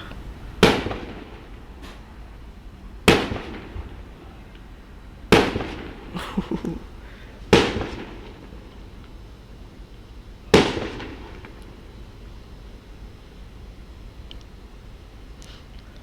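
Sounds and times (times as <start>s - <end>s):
fireworks bangs: 0.0s - 1.7s, 3.1s - 4.0s, 5.3s - 8.6s, 10.6s - 11.5s
fireworks crackling pops: 0.0s - 2.1s, 3.1s - 4.7s, 5.3s - 6.8s, 7.4s - 9.2s, 10.6s - 12.0s.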